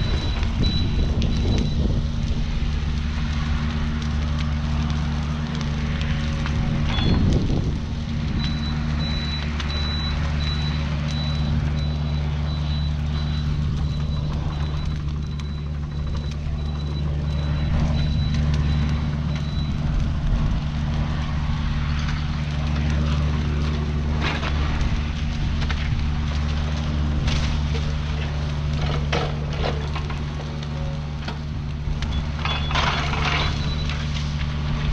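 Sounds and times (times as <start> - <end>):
excavator diesel engine running: 0.0 - 34.9.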